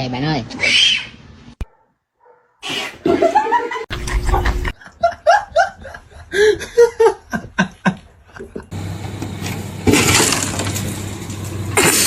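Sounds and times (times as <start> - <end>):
person laughing: 3.0 - 8.7.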